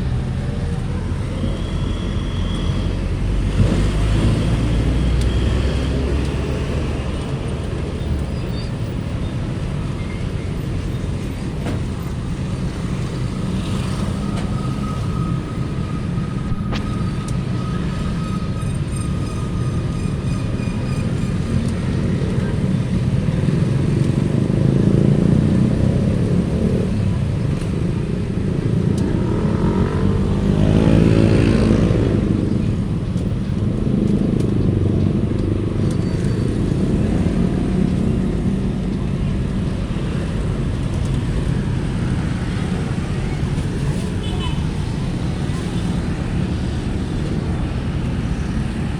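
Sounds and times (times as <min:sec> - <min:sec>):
roadside traffic rumble: 0:00.0 - 0:48.9
motorcycle passing: 0:29.1 - 0:32.4.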